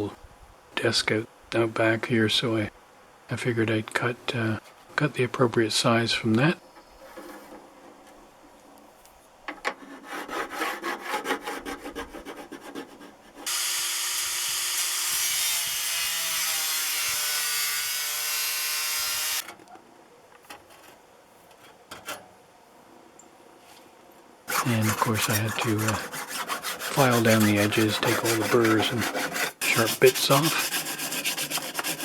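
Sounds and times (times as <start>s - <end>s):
power tool cutting metal: 13.5s - 19.4s
quick rasping strokes on metal: 24.5s - 32.0s.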